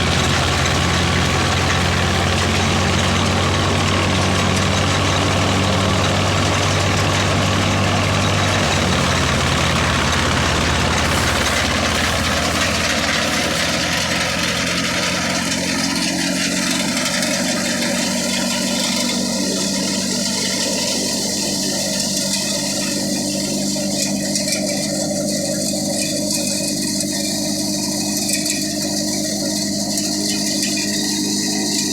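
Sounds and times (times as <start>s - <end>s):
thresher rushing noise: 0.0s - 17.2s
thresher engine running: 0.0s - 31.9s.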